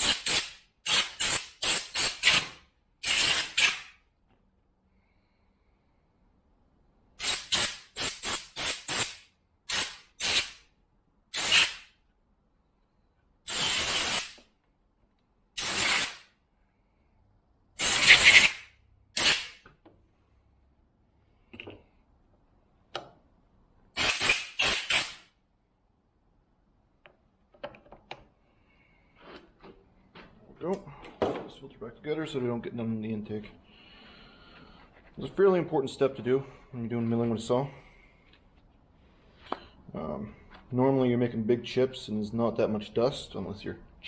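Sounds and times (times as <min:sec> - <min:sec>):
compressed air blow gun bursts: 0:00.0 - 0:03.9, 0:07.2 - 0:10.6, 0:11.3 - 0:11.9, 0:13.5 - 0:14.4, 0:15.6 - 0:16.3, 0:17.8 - 0:19.6, 0:24.0 - 0:25.2.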